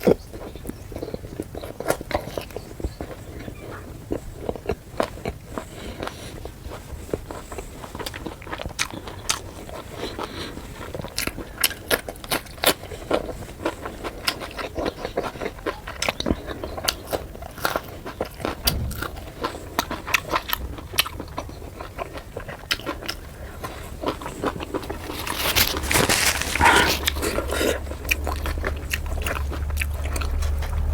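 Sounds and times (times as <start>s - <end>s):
chewing and mouth clicks: 0.0s - 30.9s.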